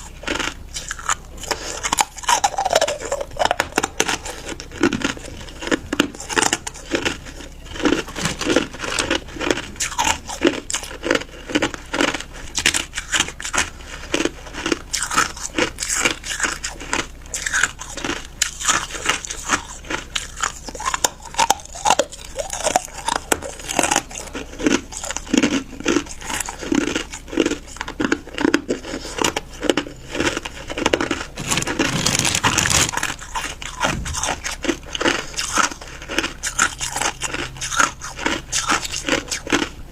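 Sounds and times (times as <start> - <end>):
ice crunching between teeth: 0.0 - 39.9.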